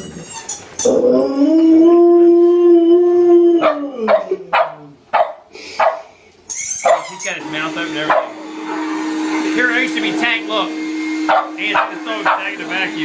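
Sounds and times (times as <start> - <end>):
dog howling: 0.0 - 5.0
dog barking: 3.6 - 6.1, 6.8 - 7.1, 8.1 - 8.4, 11.3 - 12.6.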